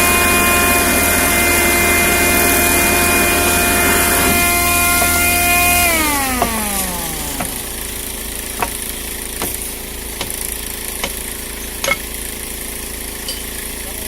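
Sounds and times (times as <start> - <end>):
small engine idling: 0.0 - 14.0
sharp knocks: 8.6 - 8.8, 9.4 - 12.1.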